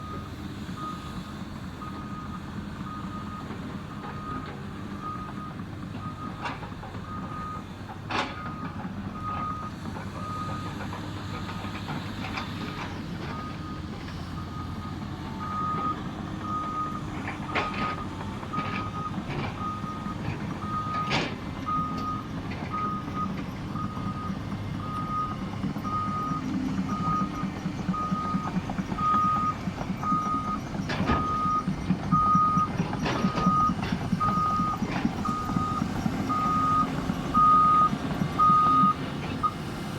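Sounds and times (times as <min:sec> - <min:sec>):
diesel engine under load: 0:00.0 - 0:39.9
backup alarm beeping: 0:14.4 - 0:39.6.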